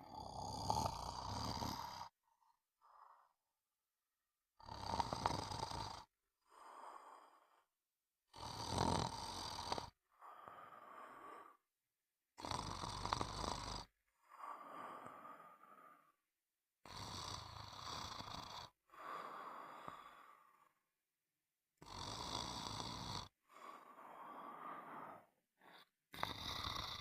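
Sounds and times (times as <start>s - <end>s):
person snoring: 0.0s - 2.2s, 4.6s - 7.6s, 8.3s - 11.6s, 12.4s - 16.1s, 16.8s - 20.8s, 21.8s - 27.0s.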